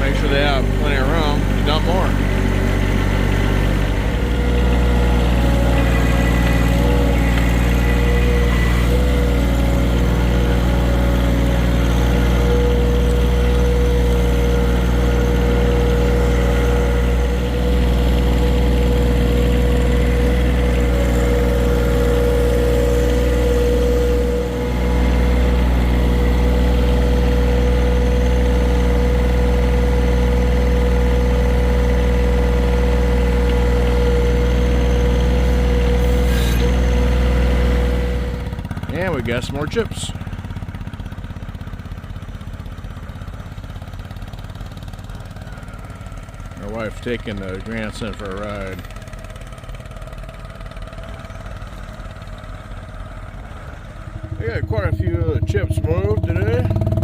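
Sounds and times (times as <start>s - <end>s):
whining tone: 0.0s - 40.3s
tractor engine running: 0.0s - 57.0s.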